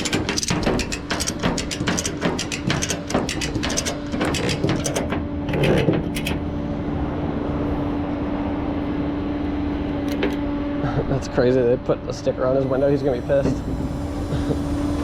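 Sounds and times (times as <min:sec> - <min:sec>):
ratchet clicking: 0:00.0 - 0:06.4
steady hum: 0:00.0 - 0:15.0.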